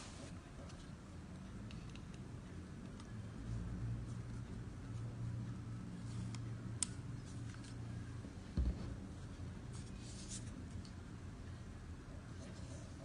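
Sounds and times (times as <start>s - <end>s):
low steady hum: 0.0s - 13.0s
dull thump: 8.6s - 9.1s.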